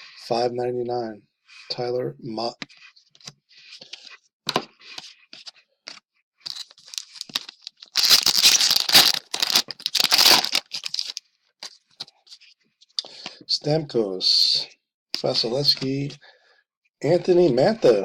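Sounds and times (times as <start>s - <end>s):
wrapper rustling and crinkling: 6.5s - 11.2s
wrapper tearing: 6.5s - 11.2s.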